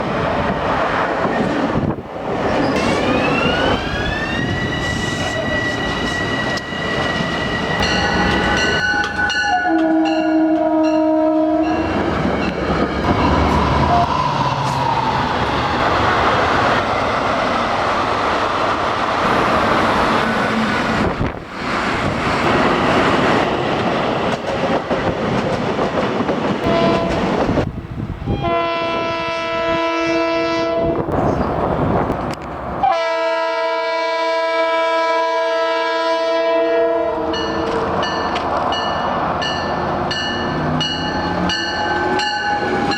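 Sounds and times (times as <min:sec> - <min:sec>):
train rumble and wheel clatter: 0:00.0 - 0:42.9
locomotive air horn blasts: 0:09.5 - 0:11.8, 0:26.6 - 0:27.2, 0:28.3 - 0:31.0, 0:32.8 - 0:37.4.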